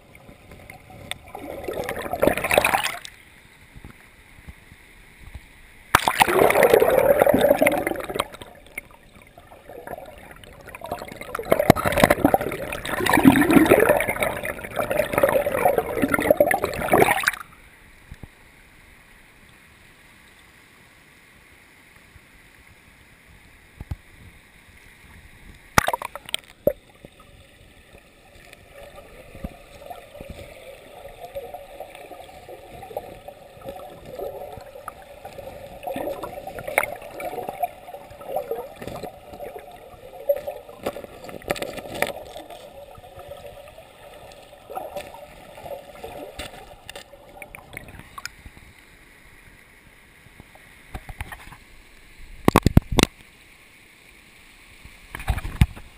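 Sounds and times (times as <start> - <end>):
water splashing and gurgling: 0.0 - 4.0, 5.9 - 17.6, 25.1 - 48.8
faint steady water noise: 0.0 - 55.9.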